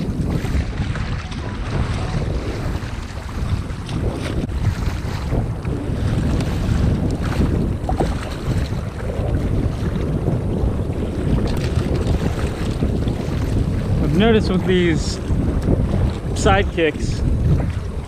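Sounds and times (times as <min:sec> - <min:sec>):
water slapping against hull: 0:00.0 - 0:18.0
wind buffeting microphone: 0:00.0 - 0:18.0.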